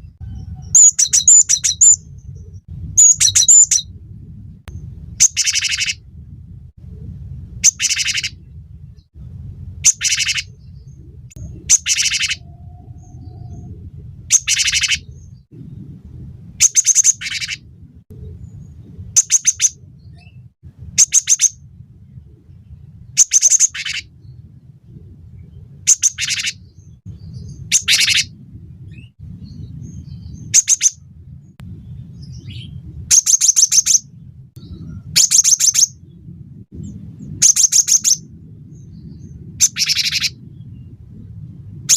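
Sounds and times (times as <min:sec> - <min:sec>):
low background rumble: 0:00.0 - 0:41.9.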